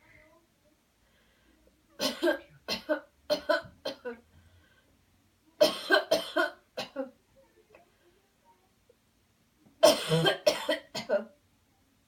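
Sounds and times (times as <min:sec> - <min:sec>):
man coughing: 0:09.8 - 0:11.1.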